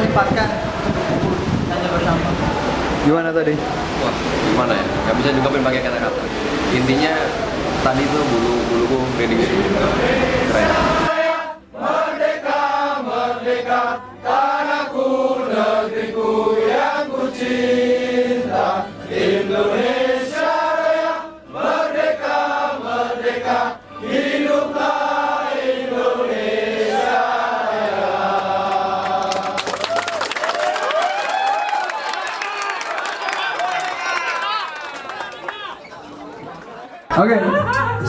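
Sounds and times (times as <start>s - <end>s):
people singing: 0.0s - 3.0s, 6.0s - 29.8s.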